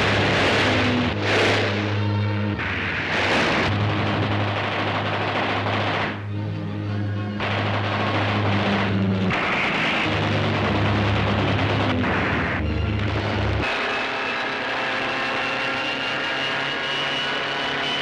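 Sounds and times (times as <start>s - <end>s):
rumbling crackling battle din: 0.0s - 6.2s, 7.4s - 13.7s
low dramatic music: 0.0s - 13.7s
aircraft engine drone: 0.0s - 18.0s.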